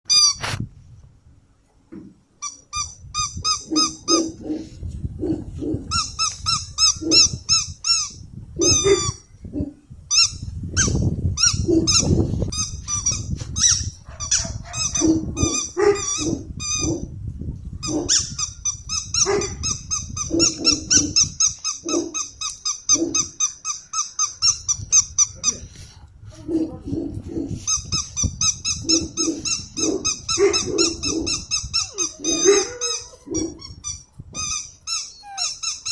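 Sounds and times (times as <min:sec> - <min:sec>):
toy squeaking: 0:00.1 - 0:00.4, 0:02.4 - 0:04.4, 0:05.9 - 0:09.2, 0:10.1 - 0:16.9, 0:18.1 - 0:25.7, 0:27.7 - 0:35.9
puppies growling: 0:25.4 - 0:33.8, 0:35.0 - 0:35.9.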